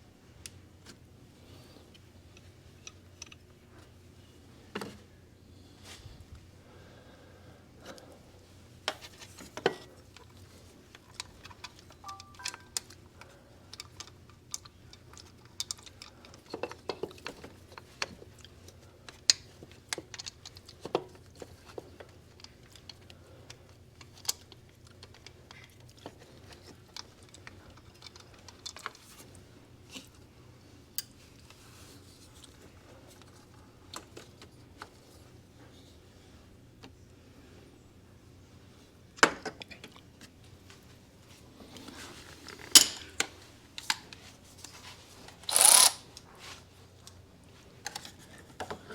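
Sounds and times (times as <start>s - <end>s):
hand tools clicking and clinking: 11.0s - 13.0s, 45.4s - 46.1s.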